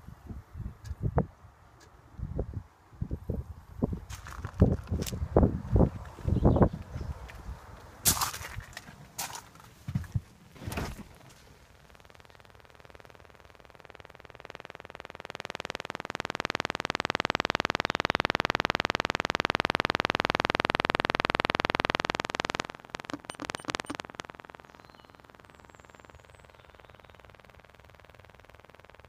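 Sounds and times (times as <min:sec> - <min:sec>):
satnav unit clicking: 0:08.4 - 0:29.0.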